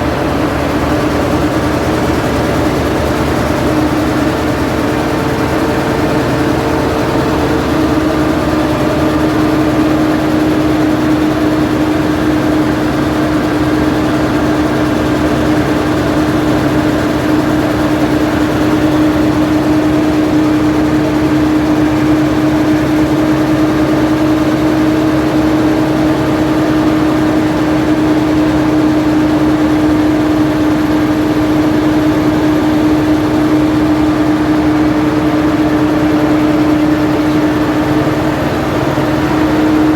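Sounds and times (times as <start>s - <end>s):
locomotive engine running: 0.0s - 39.9s.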